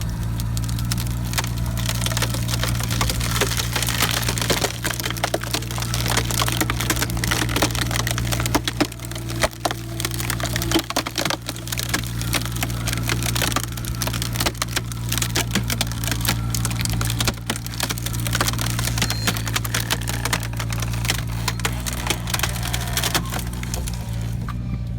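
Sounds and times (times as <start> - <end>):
excavator engine running: 0.0 - 24.9
wood cracking and splintering: 0.0 - 24.9
wood splitter screwing into log: 0.0 - 24.9.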